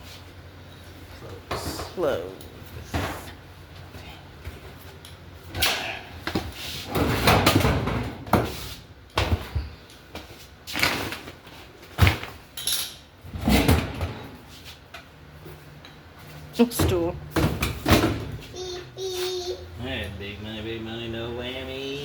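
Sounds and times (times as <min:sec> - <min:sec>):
rustling and clattering objects: 0:06.2 - 0:18.5.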